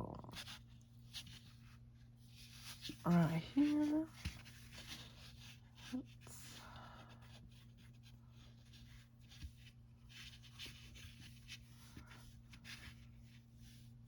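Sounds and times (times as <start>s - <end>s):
low steady hum: 0.0s - 14.0s
yarn rustling and scratching: 0.3s - 6.2s, 7.4s - 14.0s.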